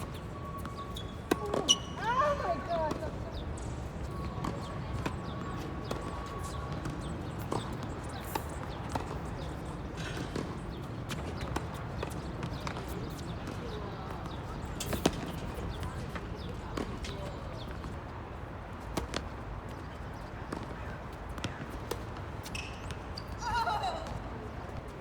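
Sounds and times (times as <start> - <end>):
tennis balls bouncing and hit: 0.0 - 25.0
racket striking ball: 0.6 - 2.0.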